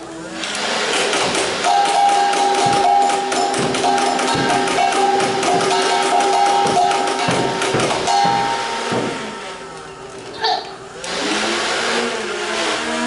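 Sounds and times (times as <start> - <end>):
foam balls firing clatter: 0.9 - 8.6.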